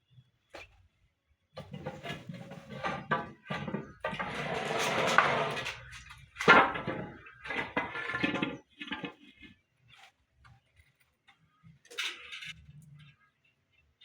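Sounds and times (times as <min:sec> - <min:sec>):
timber scraping: 0:01.6 - 0:10.2.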